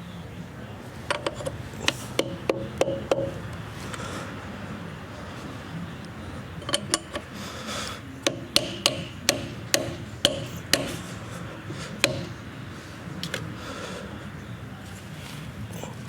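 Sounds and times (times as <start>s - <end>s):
sharp metal knocks: 1.1s - 3.4s, 8.2s - 11.0s, 12.0s - 12.4s.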